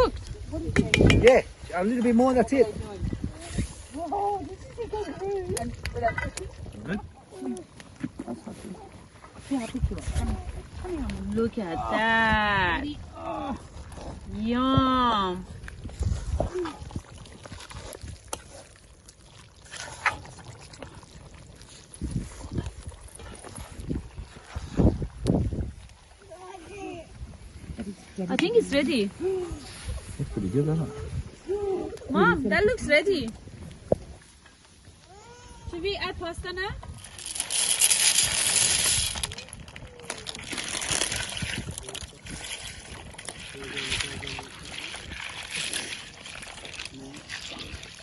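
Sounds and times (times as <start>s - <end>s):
stew bubbling in a pot: 10.6s - 25.9s
dry pasta pouring into a pot: 37.0s - 41.8s.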